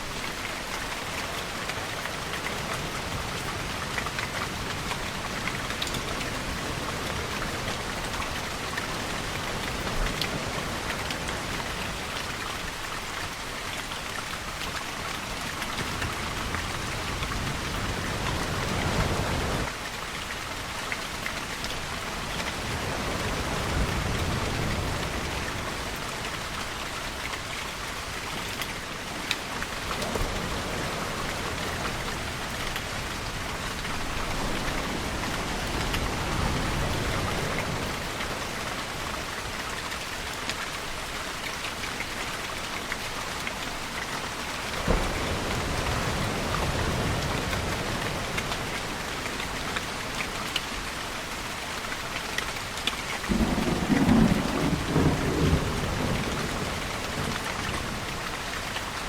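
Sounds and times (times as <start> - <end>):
rain on hard surfaces: 0.0 - 59.0
ocean waves rushing: 16.2 - 19.7, 29.9 - 39.1, 44.7 - 50.4.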